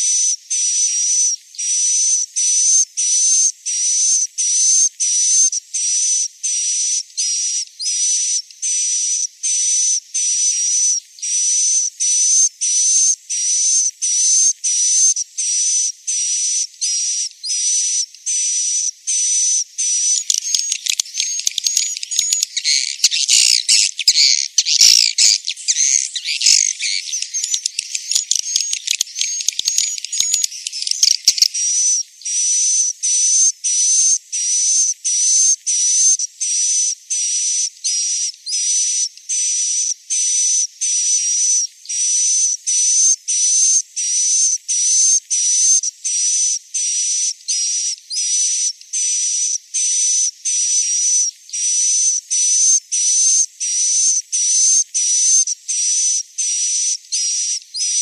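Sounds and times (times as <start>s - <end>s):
high twittering chirps: 19.1s - 32.6s
looped buzzy chirp: 19.1s - 32.8s.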